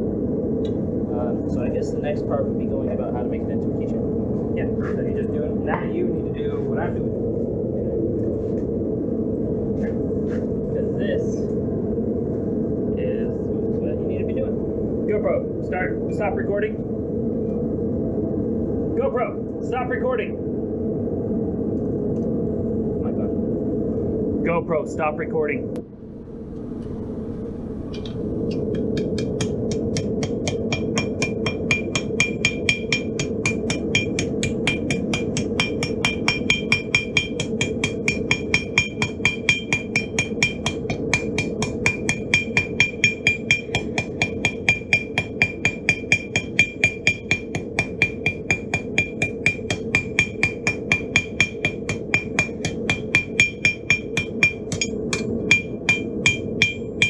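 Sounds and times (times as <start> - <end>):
low rush: 25.7 - 57.0
hammer ringing on anvil: 28.7 - 57.0.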